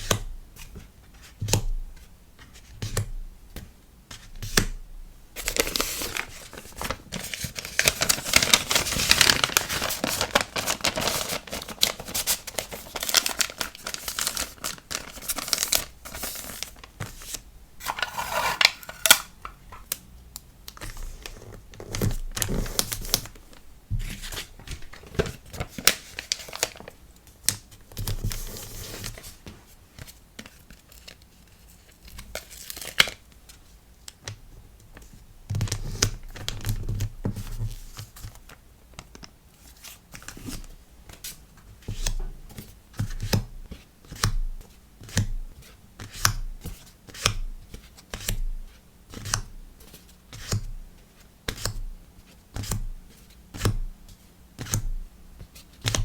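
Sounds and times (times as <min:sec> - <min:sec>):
paper and plastic crinkling: 0:05.4 - 0:19.9, 0:20.8 - 0:27.0.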